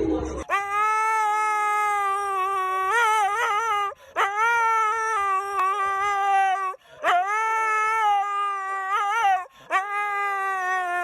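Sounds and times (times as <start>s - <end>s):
dog howling: 0.5s - 11.0s.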